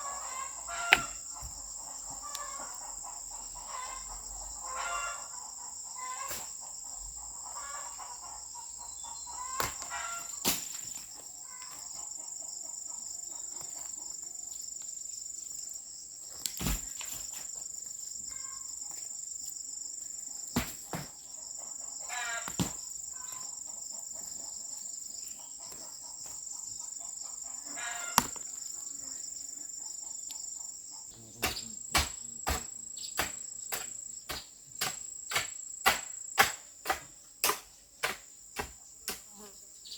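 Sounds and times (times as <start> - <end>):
chicken clucking: 0.0 - 6.4, 7.0 - 10.4, 25.4 - 28.3
insects droning: 0.0 - 39.9
sharp knocks: 31.4 - 39.2.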